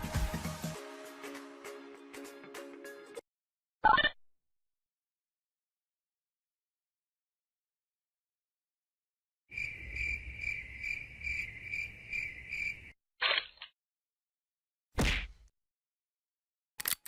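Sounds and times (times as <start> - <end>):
crickets chirping: 9.5 - 13.0.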